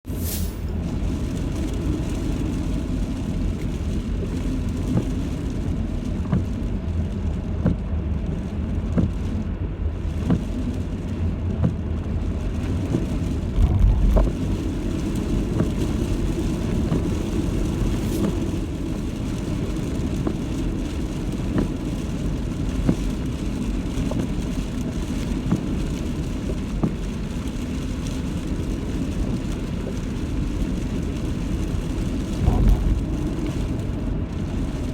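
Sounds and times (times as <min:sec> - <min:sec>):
strong wind roaring: 0:12.6 - 0:19.0, 0:31.9 - 0:34.9.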